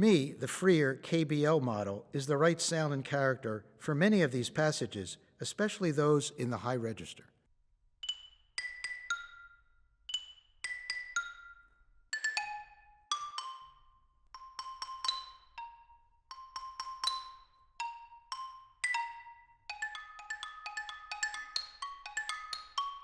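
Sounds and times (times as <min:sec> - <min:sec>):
xylophone notes: 0:08.0 - 0:23.0.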